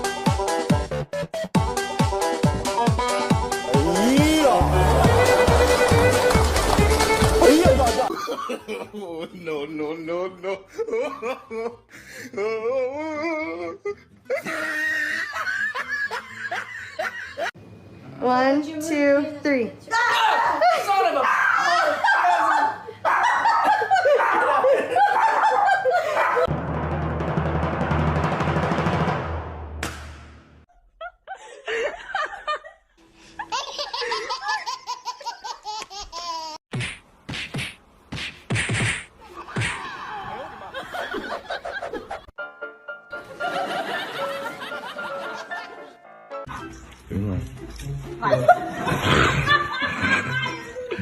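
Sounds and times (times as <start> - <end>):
person laughing and shrieking: 12.4 - 16.0, 19.9 - 26.5, 39.2 - 40.8, 48.2 - 51.0
high-pitched laughter: 13.0 - 17.5, 48.2 - 51.0.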